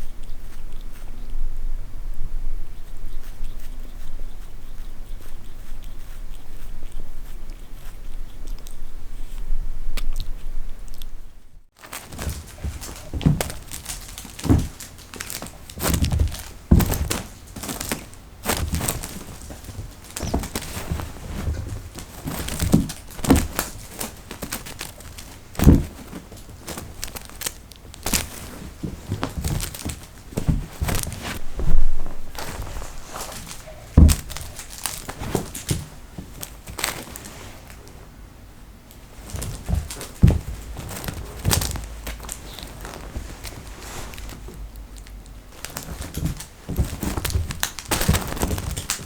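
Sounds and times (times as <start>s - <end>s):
rustling: 0.0s - 49.0s
cats thumping on floor: 11.8s - 38.0s, 39.0s - 44.7s, 45.5s - 49.0s.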